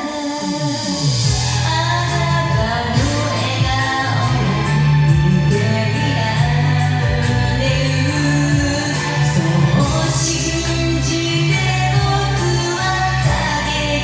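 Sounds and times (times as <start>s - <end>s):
karaoke backing track: 0.0s - 14.0s
person singing: 0.0s - 14.0s.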